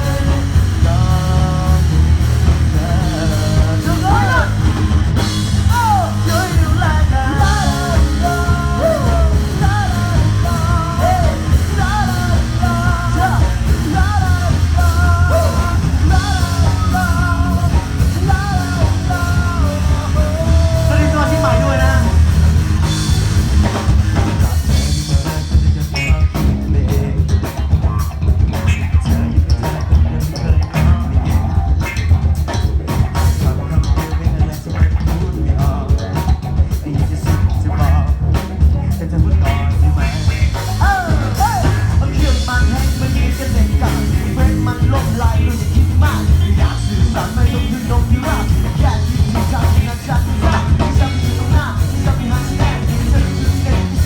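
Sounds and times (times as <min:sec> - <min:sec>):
band playing: 0:00.0 - 0:54.0
person singing: 0:00.0 - 0:54.0
steady drum beat: 0:00.0 - 0:54.0.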